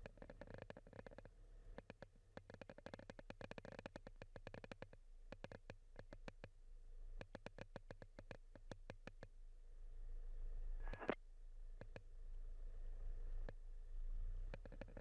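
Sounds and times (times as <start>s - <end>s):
steady low hum: 9.4s - 15.0s.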